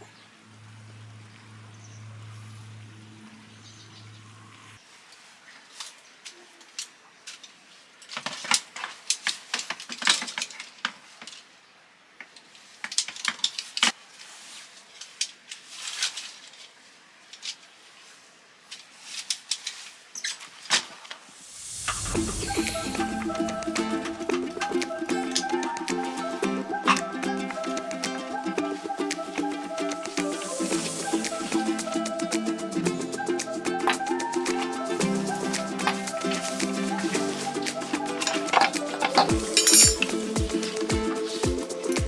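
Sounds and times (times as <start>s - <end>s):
small hard objects clinking: 38.2s - 40.2s.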